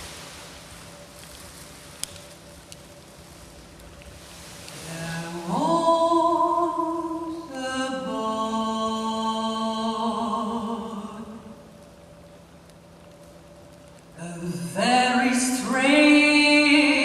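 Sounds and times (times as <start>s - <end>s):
woman singing wordless notes: 4.8s - 11.8s, 14.2s - 17.0s.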